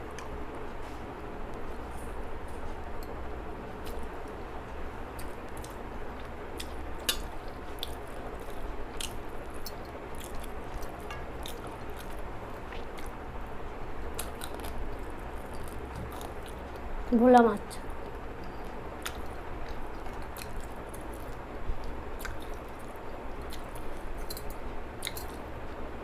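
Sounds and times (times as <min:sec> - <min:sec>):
person chewing food: 0:05.1 - 0:13.2, 0:14.1 - 0:16.9, 0:18.0 - 0:25.5.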